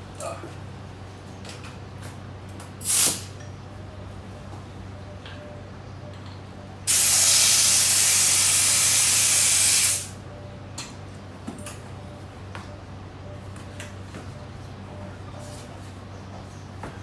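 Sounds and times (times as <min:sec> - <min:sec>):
compressed air hissing into tire: 0:02.8 - 0:03.3, 0:06.9 - 0:10.1.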